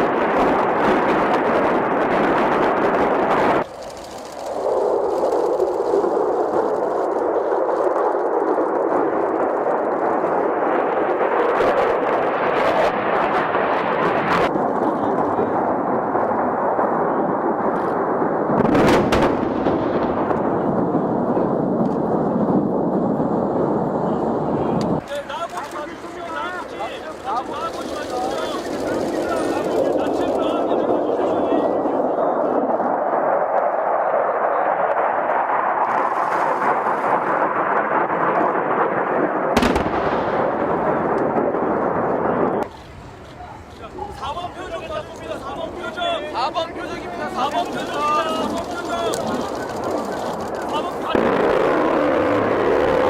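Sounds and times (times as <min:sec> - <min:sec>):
artillery and explosions rumbling: 0:00.0 - 0:43.1, 0:44.1 - 0:53.0
distant gunfire: 0:18.6 - 0:20.7, 0:36.6 - 0:42.6.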